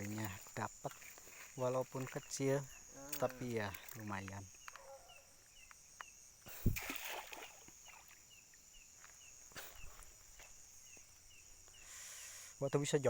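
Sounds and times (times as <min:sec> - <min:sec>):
night insects chirping: 0:00.0 - 0:13.0
net splashing onto water: 0:06.5 - 0:08.2.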